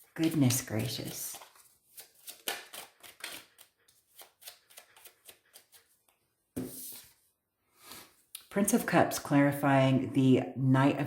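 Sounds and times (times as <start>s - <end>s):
cards shuffling and clicking: 0.0s - 7.1s
card rustle: 0.0s - 7.2s.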